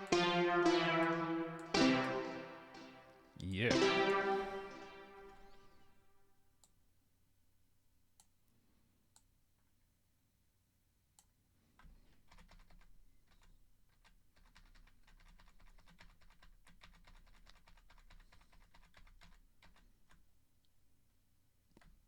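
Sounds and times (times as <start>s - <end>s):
typing on computer keyboard: 11.8s - 20.2s.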